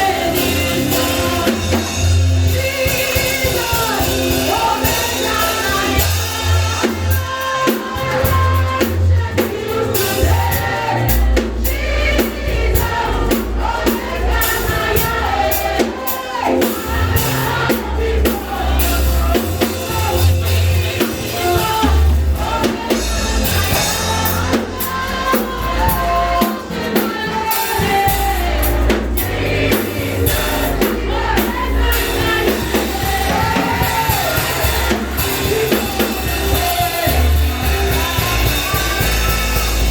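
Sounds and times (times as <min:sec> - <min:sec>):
bass: 0:00.0 - 0:39.9
drum kit: 0:00.0 - 0:39.9
worship music: 0:00.0 - 0:39.9
person singing: 0:31.9 - 0:39.9.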